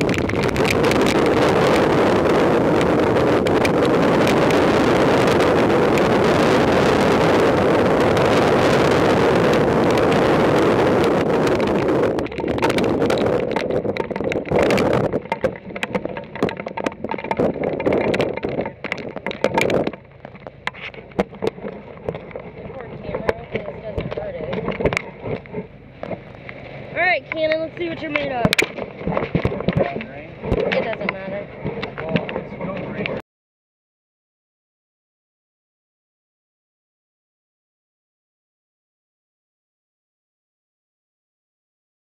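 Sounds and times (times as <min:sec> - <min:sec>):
strong wind on microphone: 0:00.0 - 0:33.2.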